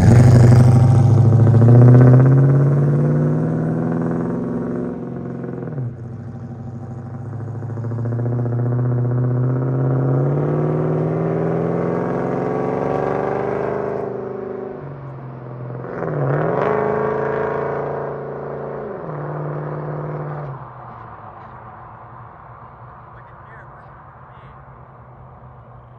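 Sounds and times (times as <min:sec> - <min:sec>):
car engine accelerating: 0:00.0 - 0:25.9.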